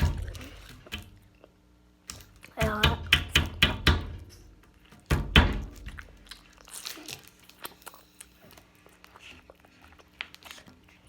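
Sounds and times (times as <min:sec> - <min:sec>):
chewing with mouth clicks: 0:05.7 - 0:11.0
person biting food: 0:06.0 - 0:09.6.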